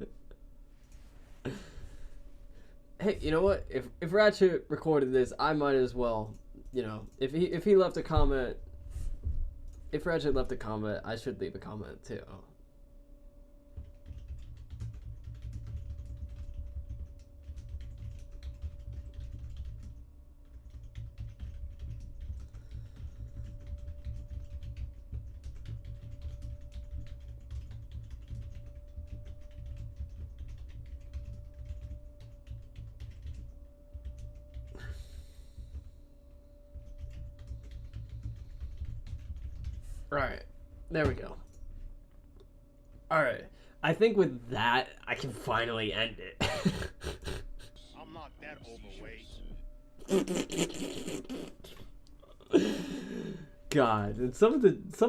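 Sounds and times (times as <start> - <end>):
faint steady hum: 0.0 - 55.0
typing on computer keyboard: 13.8 - 40.1.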